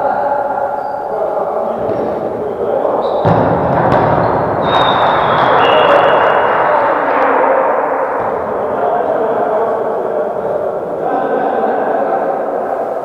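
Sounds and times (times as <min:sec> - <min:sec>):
crowd and players noise: 0:00.0 - 0:13.0
ball being kicked: 0:03.2 - 0:05.5
thin high whistle tone: 0:04.6 - 0:06.4.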